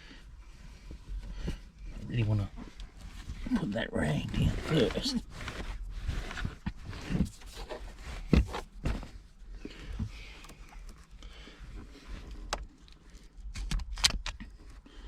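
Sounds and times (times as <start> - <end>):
rag rustling: 2.6 - 10.6.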